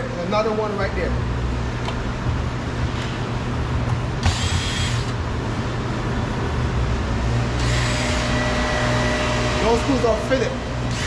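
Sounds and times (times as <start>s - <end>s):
steady low hum: 0.0s - 11.0s
cordless drill motor whine: 4.2s - 5.2s, 7.6s - 9.6s.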